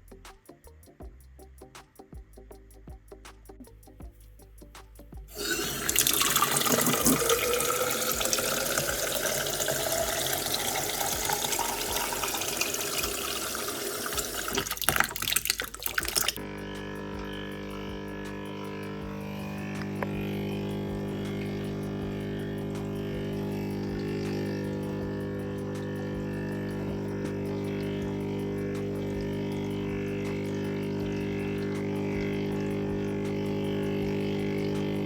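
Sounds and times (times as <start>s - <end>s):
tap water filling a container: 5.3s - 35.0s
water splashes and knocks: 5.4s - 16.4s.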